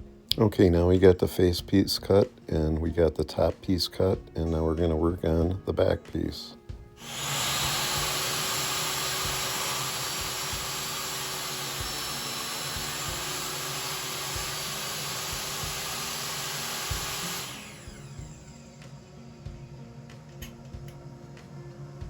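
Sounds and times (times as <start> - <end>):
saw motor winding down: 7.0 - 21.0
table saw motor whining: 7.0 - 21.0.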